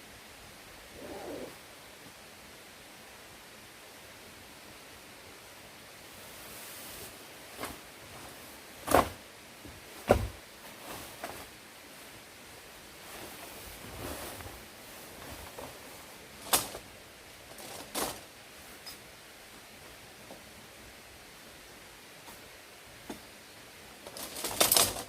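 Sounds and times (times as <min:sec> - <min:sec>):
soft rustling: 0:13.0 - 0:16.4.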